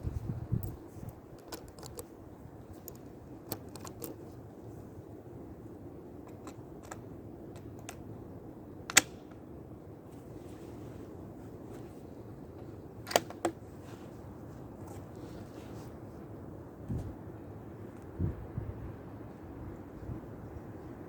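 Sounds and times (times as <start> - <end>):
wind rumbling on microphone: 0.0 - 5.8, 9.7 - 21.0
small clicks: 1.4 - 2.1, 2.8 - 4.2.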